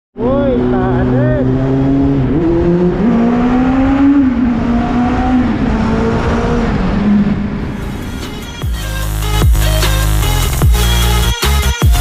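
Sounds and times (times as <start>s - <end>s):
high-revving engine: 0.2s - 8.4s.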